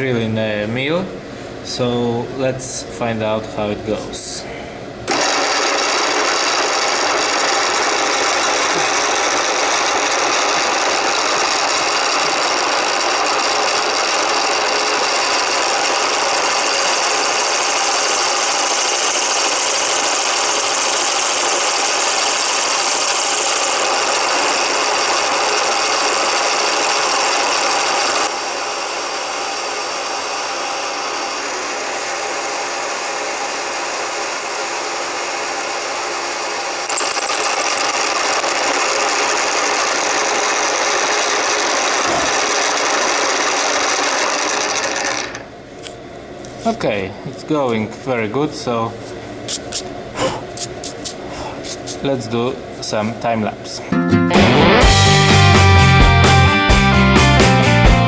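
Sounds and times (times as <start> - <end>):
milling machine drilling steel: 5.1 - 28.3, 28.9 - 45.5.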